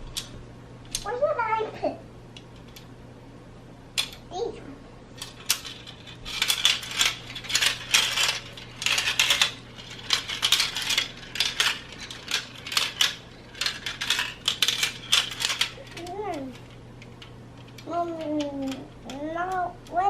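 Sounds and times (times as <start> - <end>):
marbles clattering on plastic: 5.2 - 20.0.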